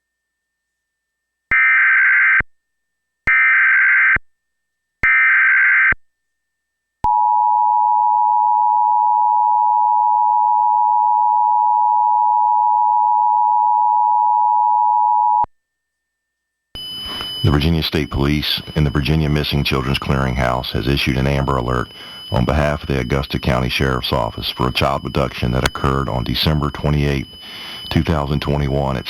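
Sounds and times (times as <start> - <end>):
two-tone alert signal: 16.8 - 29.0
digital data bursts: 17.0 - 29.0.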